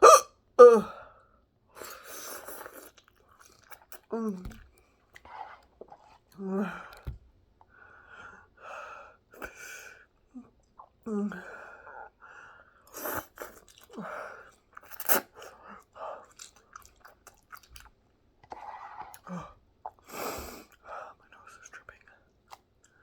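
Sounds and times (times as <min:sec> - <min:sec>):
person chewing food: 0:02.3 - 0:07.1, 0:13.0 - 0:20.8.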